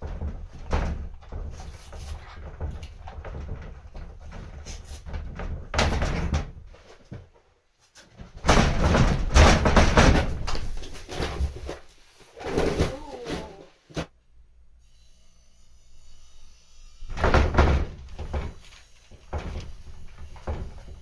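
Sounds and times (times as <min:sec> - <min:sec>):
wooden frame rattling and knocking: 0:00.0 - 0:11.8, 0:17.1 - 0:21.0.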